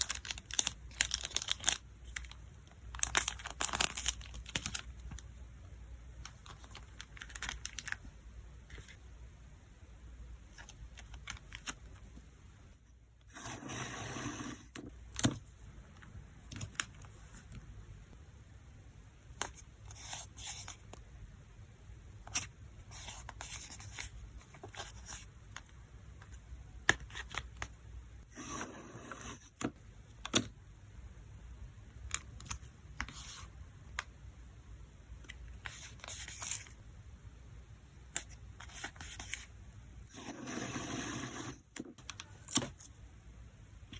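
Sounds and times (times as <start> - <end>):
plastic rustling and tearing: 0.0 - 5.0.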